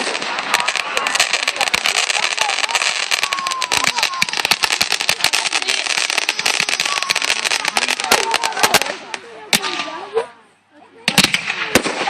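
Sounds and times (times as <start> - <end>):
fireworks crackling: 0.0 - 10.3, 11.0 - 12.0.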